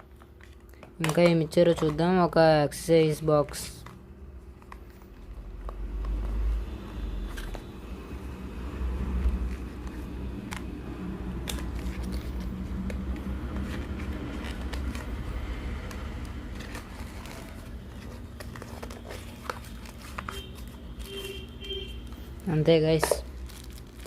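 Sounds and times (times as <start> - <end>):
packaging crinkling and clicking: 0.0 - 2.2, 9.2 - 21.2, 22.9 - 24.0.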